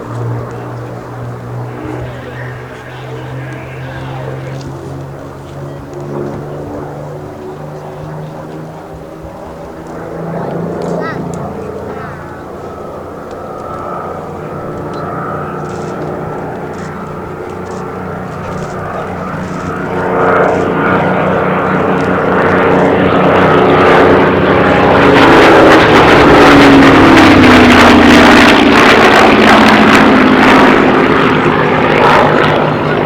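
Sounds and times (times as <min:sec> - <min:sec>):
propeller plane engine flying past: 0:00.0 - 0:33.0.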